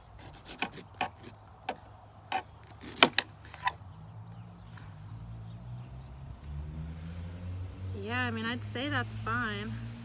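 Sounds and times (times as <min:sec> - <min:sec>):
knife cutting root: 0:00.0 - 0:03.8.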